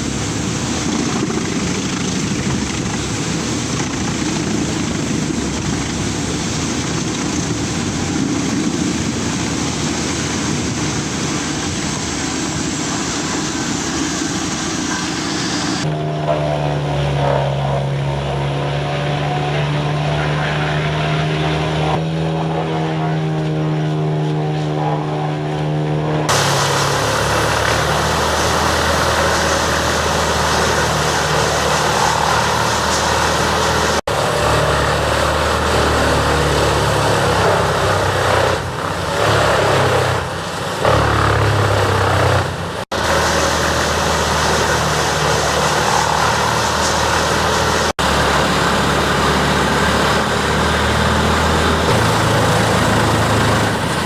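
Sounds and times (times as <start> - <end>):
wood chipper engine running: 0.0 - 16.0, 26.3 - 54.0
grinding and shredding: 26.2 - 54.0.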